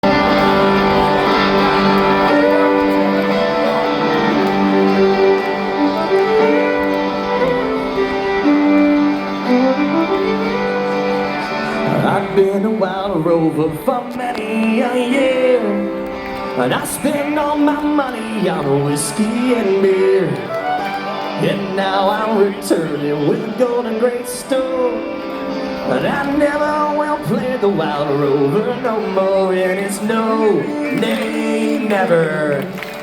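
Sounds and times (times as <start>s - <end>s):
held melody line: 0.0s - 32.0s
person singing: 0.0s - 32.8s
strummed guitar: 0.0s - 33.0s.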